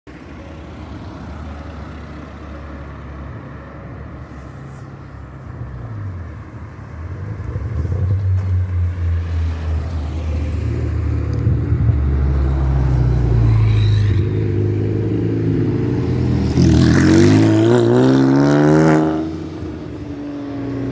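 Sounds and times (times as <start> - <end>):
car engine rumbling: 0.8 - 20.9.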